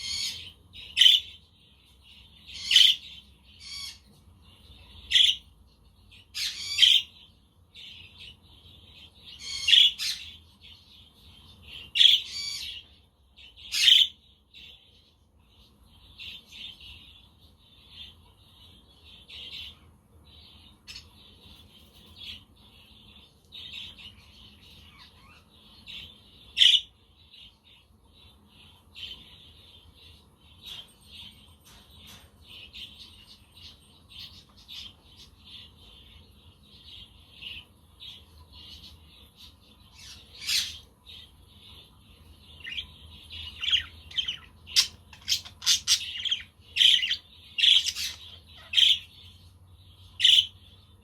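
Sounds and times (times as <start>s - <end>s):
budgerigars chattering: 43.5s - 49.1s.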